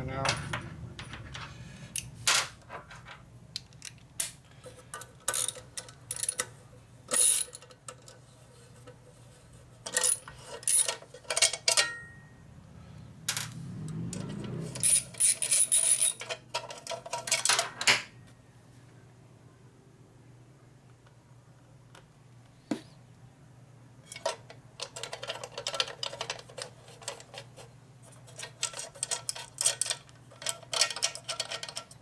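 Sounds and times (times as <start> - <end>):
wrench and metal parts clinking: 3.8 - 6.5, 7.1 - 8.1, 9.9 - 12.2, 14.2 - 17.7, 28.3 - 32.0.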